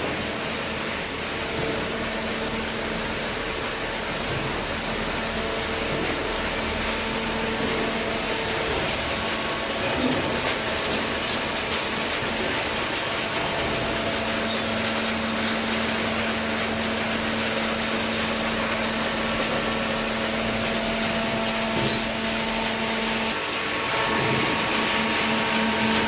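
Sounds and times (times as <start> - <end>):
hydraulic baler running: 0.0 - 26.0
hydraulic pump motor hum: 0.0 - 26.0.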